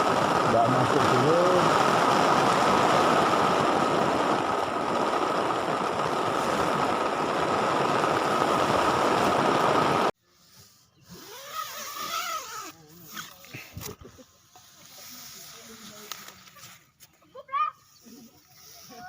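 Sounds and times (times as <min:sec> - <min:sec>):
heavy rain: 0:00.0 - 0:10.1
storm wind: 0:00.0 - 0:10.1.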